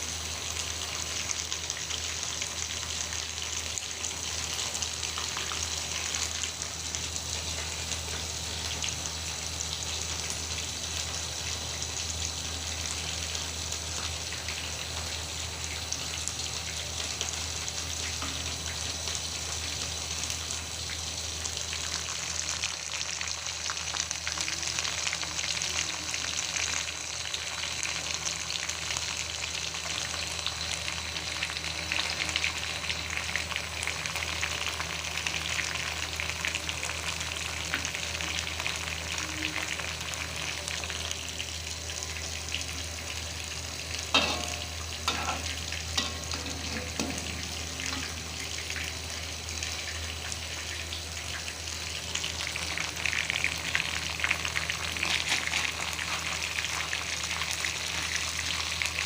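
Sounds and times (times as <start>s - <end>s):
food sizzling in hot oil: 0.0s - 59.0s
knocks or scrapes in pan: 44.1s - 48.1s.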